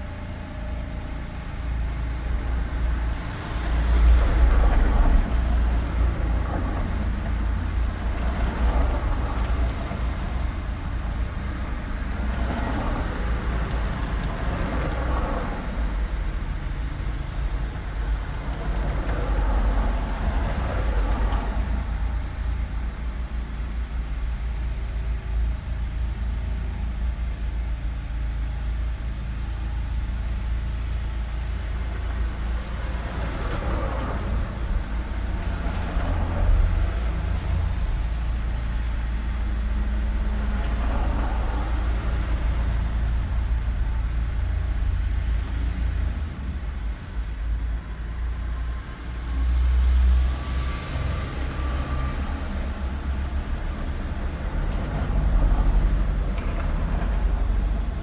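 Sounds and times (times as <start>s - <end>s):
vehicles passing by: 0.0s - 25.8s, 28.5s - 58.0s
traffic rumble: 0.0s - 58.0s.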